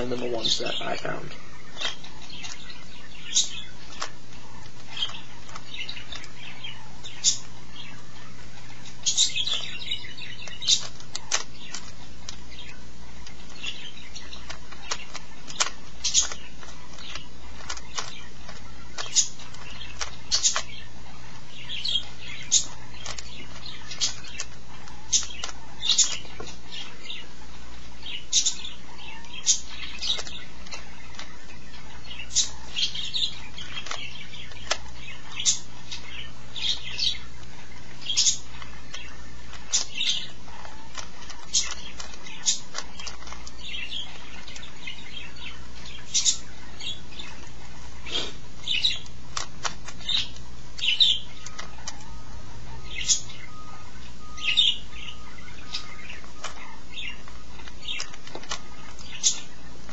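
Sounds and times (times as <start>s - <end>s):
puzzle cube clicking: 9.0s - 20.8s, 57.5s - 59.9s.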